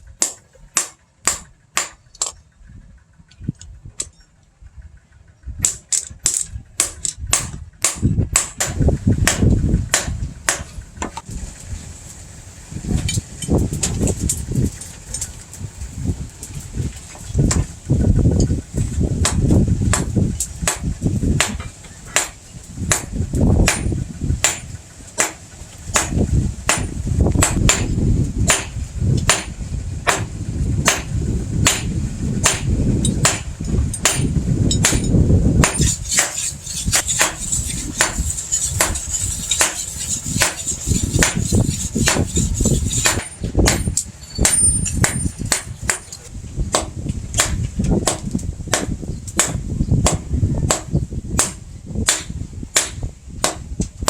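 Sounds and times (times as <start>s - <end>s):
hammer blows on steel and anvil: 19.2s - 53.7s.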